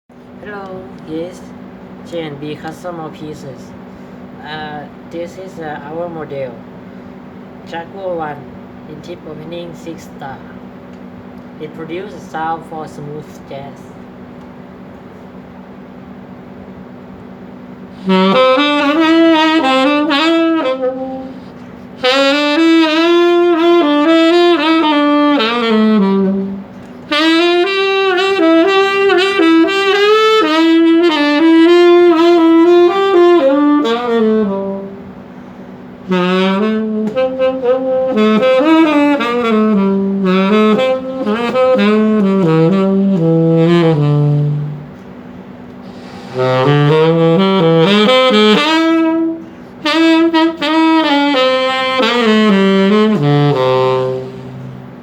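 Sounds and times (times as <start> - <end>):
tenor saxophone playing smooth jazz: 17.0 - 55.0.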